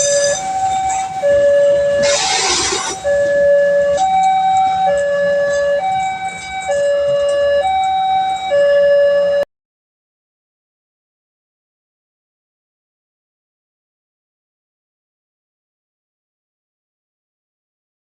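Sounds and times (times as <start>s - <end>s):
level crossing two-tone siren: 0.0s - 9.5s.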